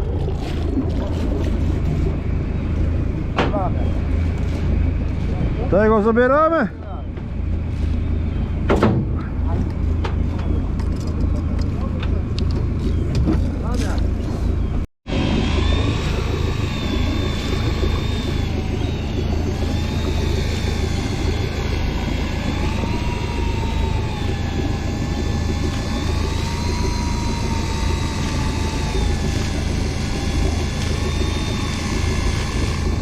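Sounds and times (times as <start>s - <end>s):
boat engine running: 0.0s - 33.0s.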